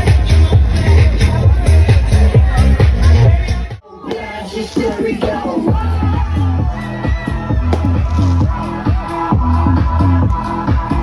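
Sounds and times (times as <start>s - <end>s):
electronic dance music: 4.2s - 11.0s
kick drum: 5.7s - 10.4s
sliding bassline: 5.7s - 11.0s.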